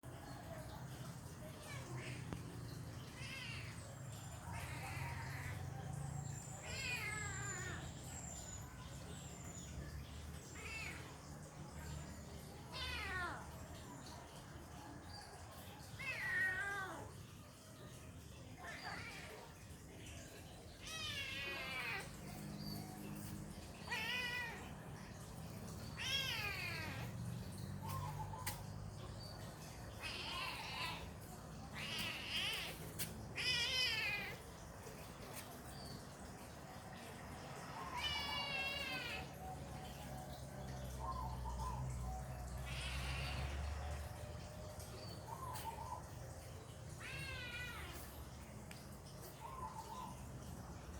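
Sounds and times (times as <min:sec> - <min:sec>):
cat meowing: 0:03.0 - 0:05.7, 0:06.6 - 0:08.0, 0:12.7 - 0:13.5, 0:15.9 - 0:17.1, 0:20.7 - 0:22.5, 0:23.2 - 0:28.1, 0:29.6 - 0:34.5, 0:37.9 - 0:39.4, 0:42.6 - 0:43.8, 0:46.8 - 0:48.3.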